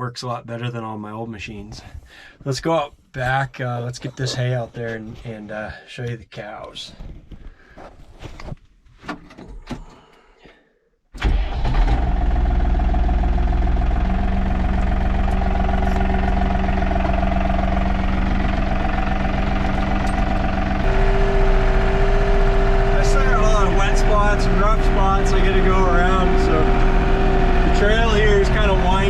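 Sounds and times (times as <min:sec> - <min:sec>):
tractor diesel engine running: 0:11.2 - 0:29.0
high steady whine: 0:13.8 - 0:29.0.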